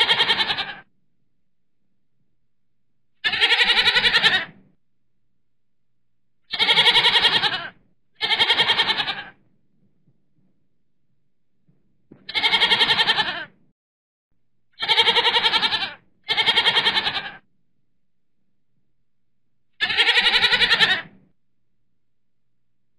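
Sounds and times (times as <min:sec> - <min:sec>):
goat bleating: 0:00.0 - 0:00.8, 0:03.2 - 0:04.6, 0:06.5 - 0:09.4, 0:12.3 - 0:13.5, 0:14.8 - 0:17.4, 0:19.8 - 0:21.2.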